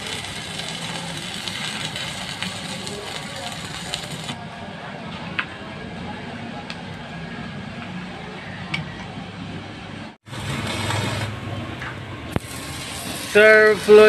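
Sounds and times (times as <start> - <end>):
welding machine humming: 0.0 - 4.4, 10.3 - 14.0.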